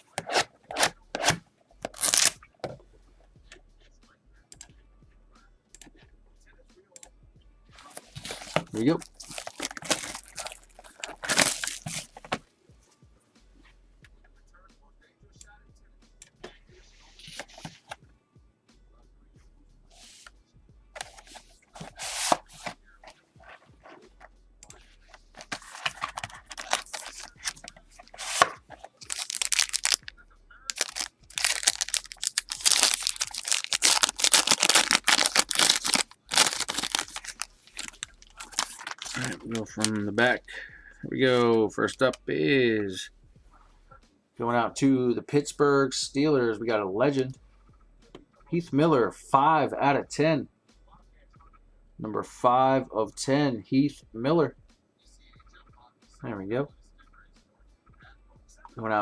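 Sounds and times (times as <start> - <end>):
packaging clicking and rustling: 0.0 - 2.4, 7.9 - 12.4, 21.0 - 22.8, 25.4 - 30.1, 30.7 - 40.0
packaging ripping: 0.0 - 2.4, 7.9 - 12.4, 21.0 - 22.8, 25.4 - 30.1, 30.7 - 40.0
plastic wrapping crinkling and tearing: 0.0 - 2.4, 7.8 - 12.4, 21.0 - 22.8, 25.3 - 30.1, 30.7 - 40.0.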